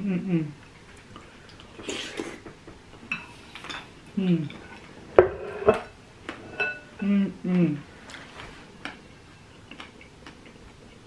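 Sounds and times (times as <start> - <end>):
spoon scraping a bowl: 4.5 - 7.0.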